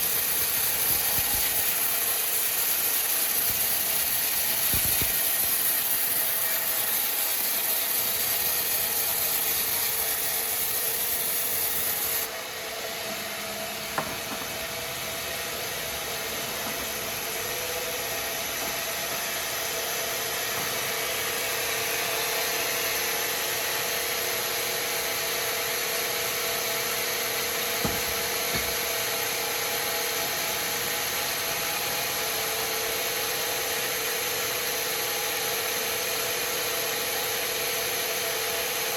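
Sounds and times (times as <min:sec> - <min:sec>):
bandsaw cutting through log: 0:00.0 - 0:12.3, 0:25.9 - 0:33.9.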